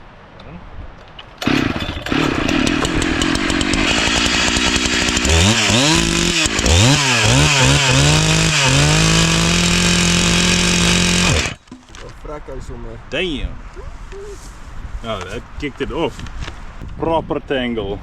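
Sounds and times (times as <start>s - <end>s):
chainsaw revving: 1.4s - 11.6s.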